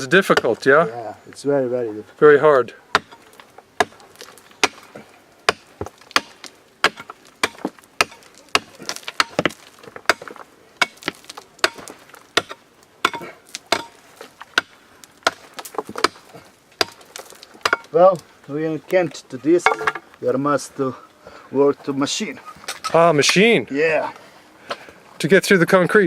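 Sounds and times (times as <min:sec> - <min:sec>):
pick striking concrete: 0:02.9 - 0:18.0.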